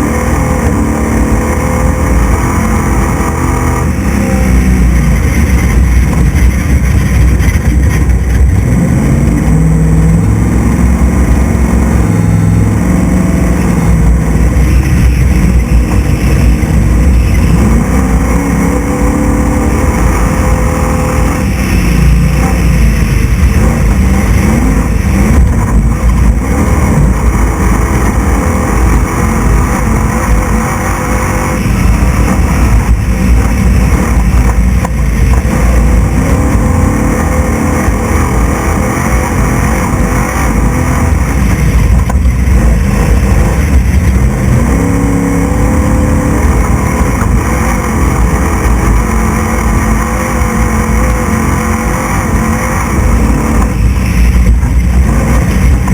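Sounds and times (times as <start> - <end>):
truck engine running hard: 0.0 - 55.9.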